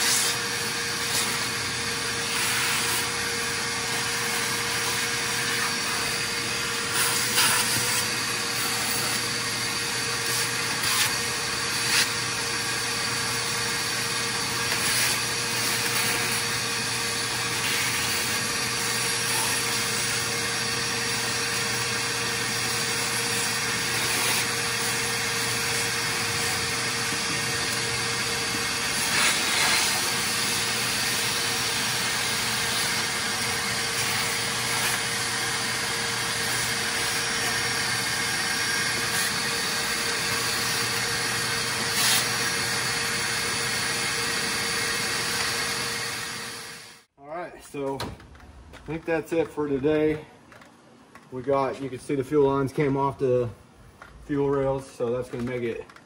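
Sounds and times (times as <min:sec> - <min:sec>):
shop vacuum running: 0:00.0 - 0:47.1
knocks and clatters of parts: 0:47.8 - 0:49.6, 0:50.4 - 0:51.3.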